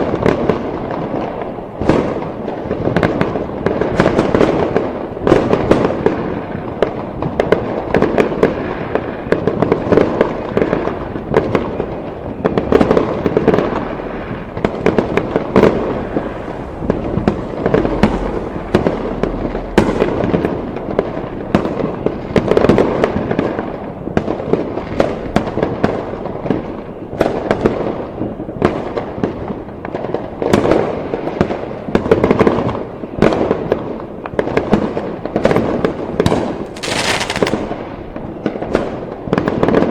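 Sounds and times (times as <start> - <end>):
fireworks bangs and crackling: 0.0 - 39.9
rumble of explosions: 8.2 - 23.6, 36.7 - 38.0.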